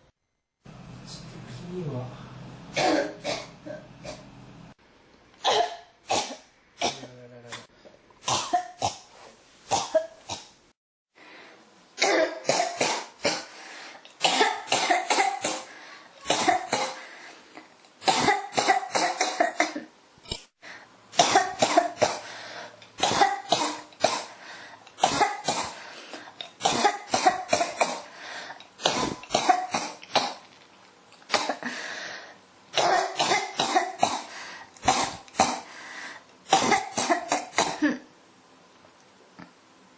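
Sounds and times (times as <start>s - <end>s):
person coughing: 2.8s - 4.2s, 5.4s - 7.1s, 12.0s - 13.5s, 14.2s - 17.1s, 18.0s - 19.9s, 21.2s - 22.3s, 25.0s - 25.8s, 26.6s - 28.1s, 28.8s - 30.4s, 31.3s - 31.8s, 32.8s - 35.7s, 36.5s - 38.0s.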